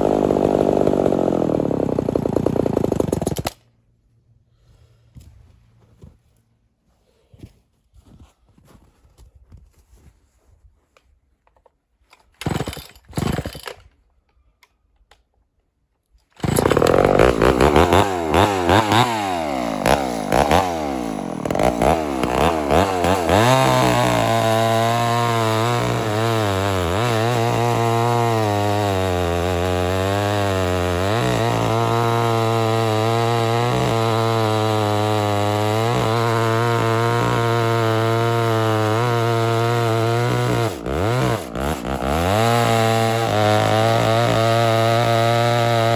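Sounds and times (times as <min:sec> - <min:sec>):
chainsaw running at high revs: 0:00.0 - 0:03.6, 0:12.4 - 0:13.6, 0:16.4 - 0:45.9.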